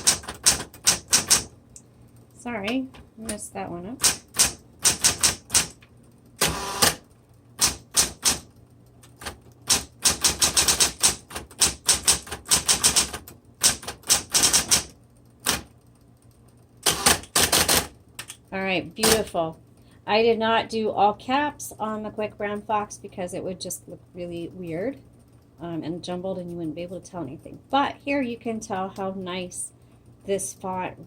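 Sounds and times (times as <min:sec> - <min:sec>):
electric typewriter keystrokes: 0:00.0 - 0:01.5, 0:02.7 - 0:18.4, 0:19.0 - 0:19.4
typewriter burst of noise: 0:04.0 - 0:05.8, 0:06.4 - 0:07.0, 0:07.6 - 0:08.5, 0:09.7 - 0:15.6, 0:16.8 - 0:17.9.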